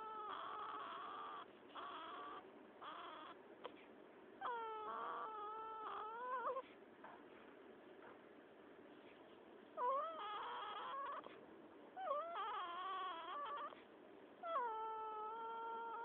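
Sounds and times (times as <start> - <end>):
squeaky whining snores: 0.0 - 3.8, 4.4 - 6.7, 9.7 - 16.0.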